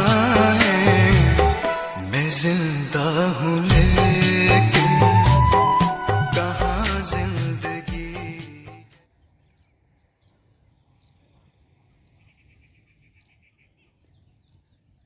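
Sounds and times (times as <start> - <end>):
cricket chirping: 8.7 - 15.0
lower chirping call: 8.8 - 15.0.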